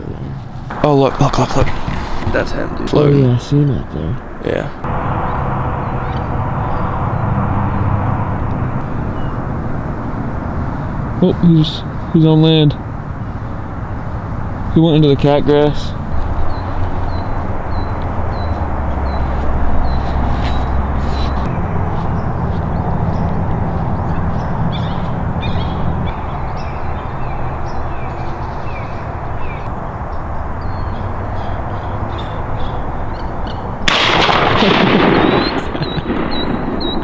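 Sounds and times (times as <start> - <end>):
outdoor rushing noise: 0.0 - 37.0
shotgun shot: 33.9 - 37.0.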